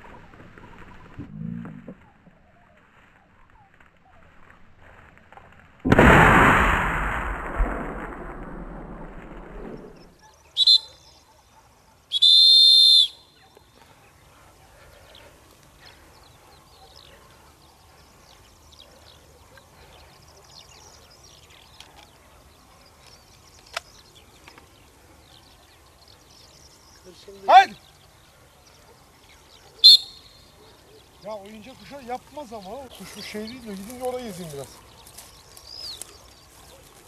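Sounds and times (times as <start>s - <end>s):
shrill dog whistle blasts: 10.6s - 11.1s, 12.1s - 13.3s, 29.8s - 30.3s.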